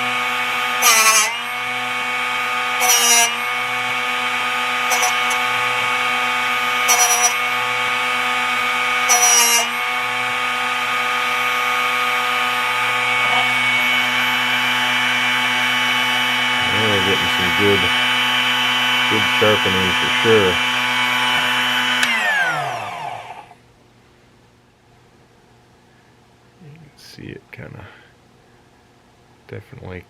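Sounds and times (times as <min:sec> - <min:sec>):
sharpener motor running: 0:00.0 - 0:23.6
rasping grind: 0:02.5 - 0:23.2.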